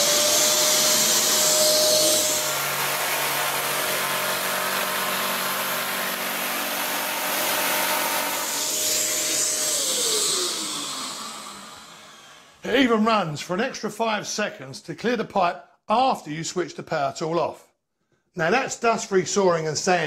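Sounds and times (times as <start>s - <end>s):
power saw cutting wood: 0.0s - 12.6s
vacuum hissing: 0.0s - 12.6s.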